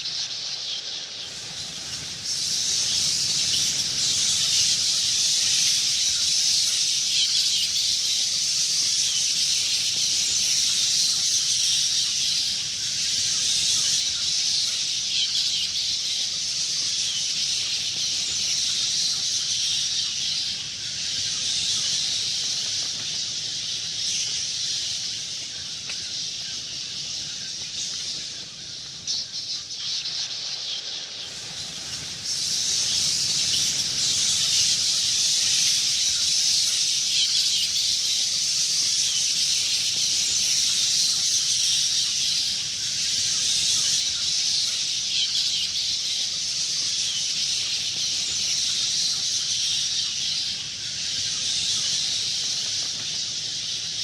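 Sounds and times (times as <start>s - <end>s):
bats chittering: 0.0s - 54.0s.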